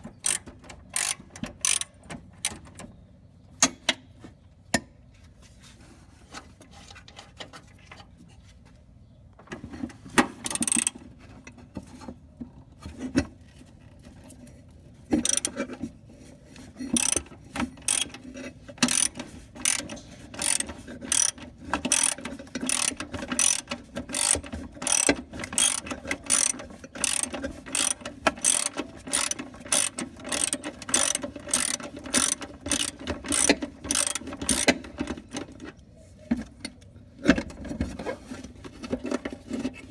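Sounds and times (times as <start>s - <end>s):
hand ratchet clicking: 0.2s - 2.0s, 10.4s - 11.0s, 15.2s - 15.6s, 17.0s - 18.2s, 18.8s - 34.9s.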